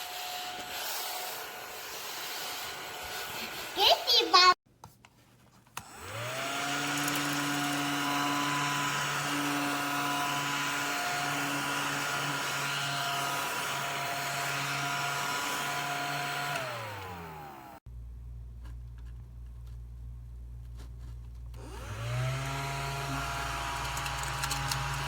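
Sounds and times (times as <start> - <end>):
mini vacuum cleaner motor whining: 0.0 - 4.0, 5.8 - 17.8, 21.6 - 25.0.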